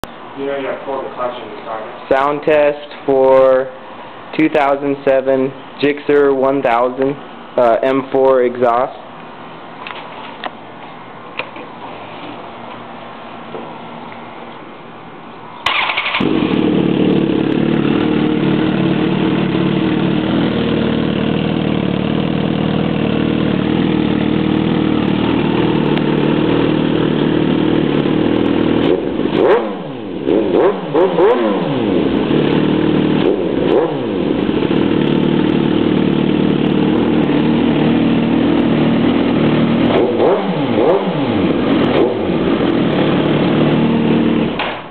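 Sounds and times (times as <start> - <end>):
motorcycle engine revving: 15.6 - 44.7
motorcycle engine idling: 15.7 - 29.3, 31.8 - 40.0, 41.4 - 44.6.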